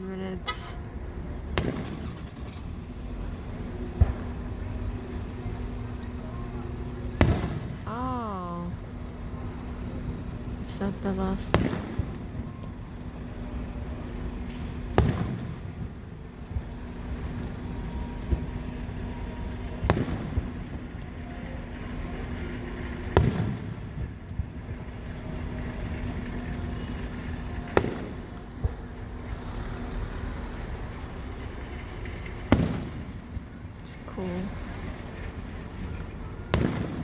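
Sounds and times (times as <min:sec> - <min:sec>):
steady low hum: 0:00.0 - 0:37.0
faint firework pops: 0:01.6 - 0:06.2, 0:06.8 - 0:07.9, 0:11.4 - 0:12.9, 0:13.6 - 0:17.6, 0:18.2 - 0:21.6, 0:22.7 - 0:29.4, 0:32.1 - 0:33.3, 0:36.5 - 0:37.0
firework shells bursting: 0:01.6 - 0:37.0.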